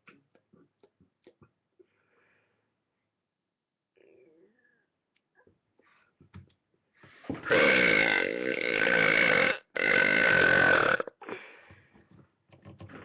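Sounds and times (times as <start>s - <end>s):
boy belching: 7.5s - 11.2s.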